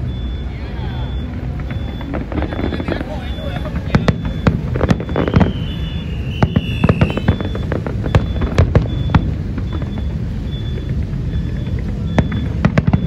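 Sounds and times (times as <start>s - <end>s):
firework whistle: 0.0s - 13.0s
fireworks banging: 0.0s - 13.0s.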